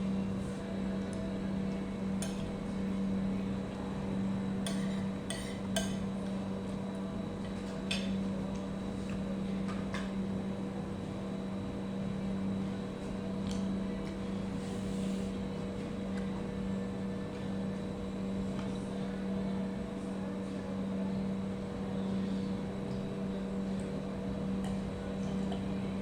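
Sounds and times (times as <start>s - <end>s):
low electrical hum: 0.0s - 26.0s
utensils clinking against dishes: 4.6s - 6.2s, 7.4s - 8.2s.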